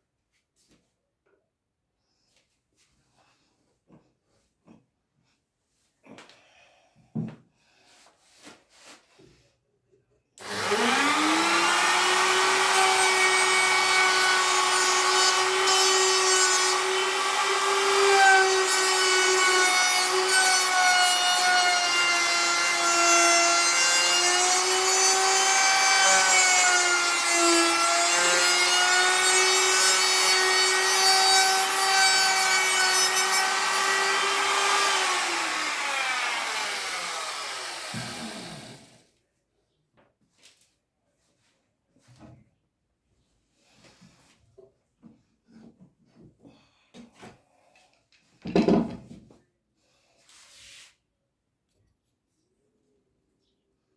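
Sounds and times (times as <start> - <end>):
power tool grinding: 10.4 - 39.0.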